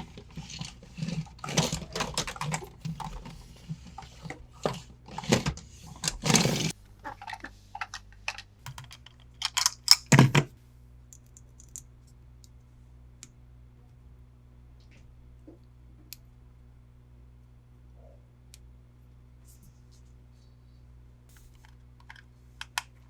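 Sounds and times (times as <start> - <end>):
plastic toys clicking and tapping: 0.0 - 10.4.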